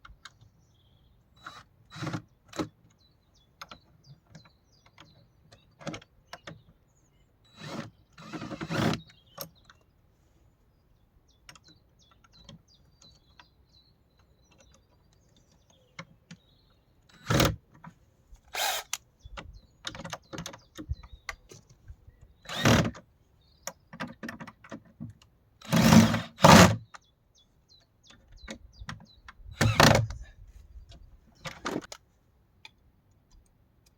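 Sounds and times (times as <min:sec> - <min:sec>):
power drill running: 0:18.5 - 0:19.0, 0:22.5 - 0:22.9, 0:25.7 - 0:26.7, 0:29.6 - 0:30.1.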